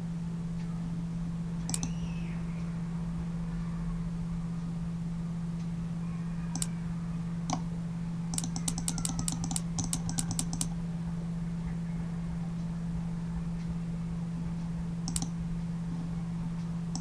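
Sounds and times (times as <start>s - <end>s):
steady low hum: 0.0s - 17.0s
typing on computer keyboard: 1.7s - 1.9s, 8.3s - 10.7s, 15.1s - 15.4s.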